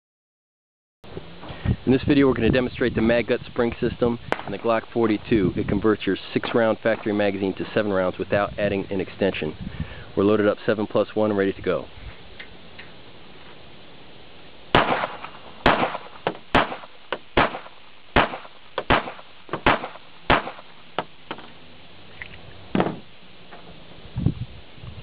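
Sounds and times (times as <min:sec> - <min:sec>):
pistol shots: 0:04.3 - 0:05.0, 0:14.7 - 0:21.4.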